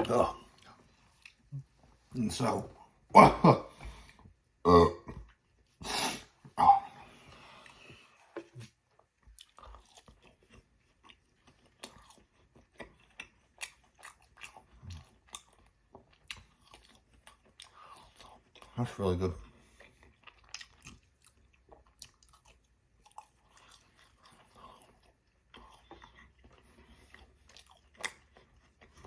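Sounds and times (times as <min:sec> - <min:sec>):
short vocal sounds: 0:03.1 - 0:03.9, 0:04.7 - 0:05.2, 0:05.8 - 0:07.1
crunchy chewing: 0:07.1 - 0:29.0.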